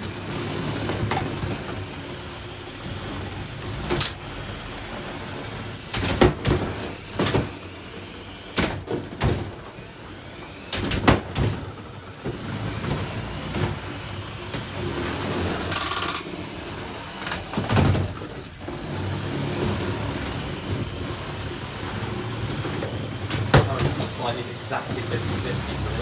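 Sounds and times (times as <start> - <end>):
robot motors whirring: 0.0 - 26.0
plastic knocks and clatters: 22.5 - 24.2.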